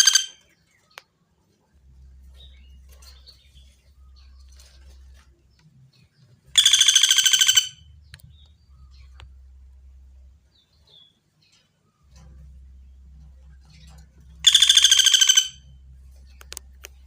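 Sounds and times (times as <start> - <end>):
woodpecker rattling call: 0.0 - 0.9, 6.5 - 9.4, 13.8 - 17.0.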